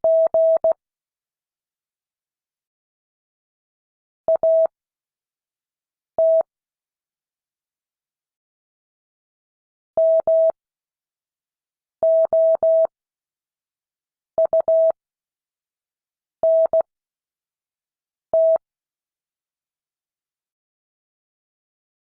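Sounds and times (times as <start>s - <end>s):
morse code beeps: 12.1s - 12.9s.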